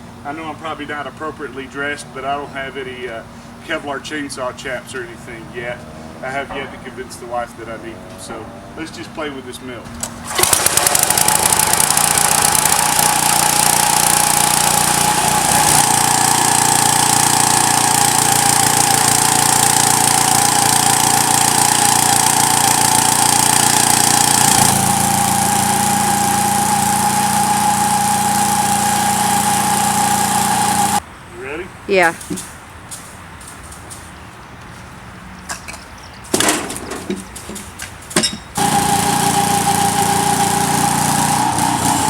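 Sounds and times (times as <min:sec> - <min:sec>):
small gasoline engine running: 0:10.0 - 0:31.0, 0:38.6 - 0:42.0
bandsaw blade sawing log: 0:10.2 - 0:31.0, 0:38.6 - 0:42.0.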